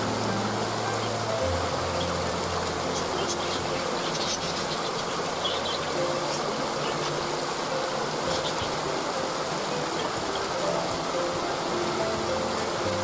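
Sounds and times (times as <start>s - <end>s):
small birds chirping: 0.0s - 13.0s
waterfall rushing: 0.0s - 13.0s.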